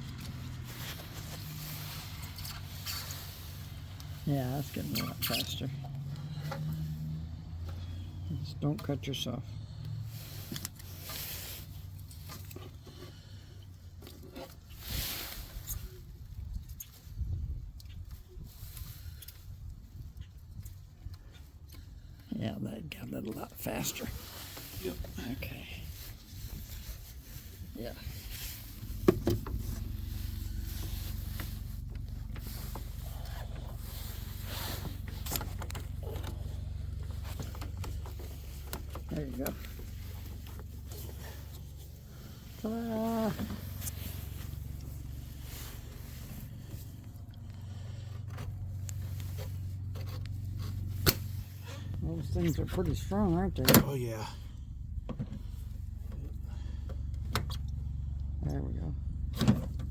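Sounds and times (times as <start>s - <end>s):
pulsing mechanical rumble: 21.0s - 59.9s.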